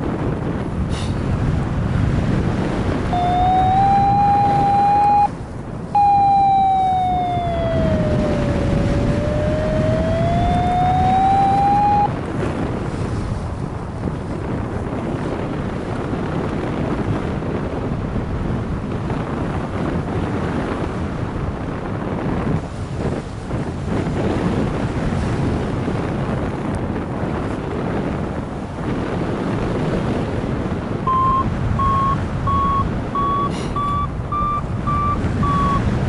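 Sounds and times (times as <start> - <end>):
wind noise on microphone: 0.0 - 36.0
electronic variometer tone: 3.1 - 5.4, 6.0 - 12.2, 31.1 - 36.0.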